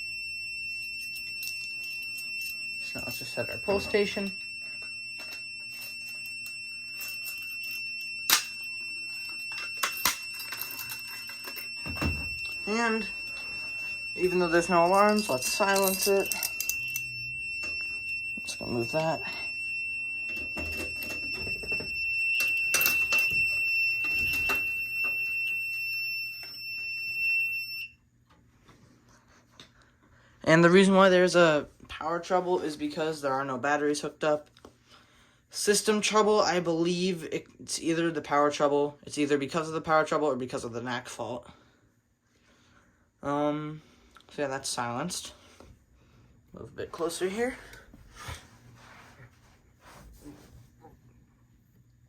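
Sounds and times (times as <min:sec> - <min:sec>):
alarm panel buzzer tone: 0:00.0 - 0:28.0.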